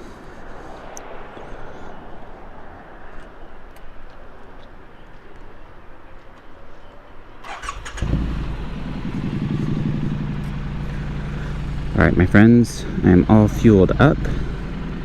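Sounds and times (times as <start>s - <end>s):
motorcycle engine idling: 7.5s - 15.0s.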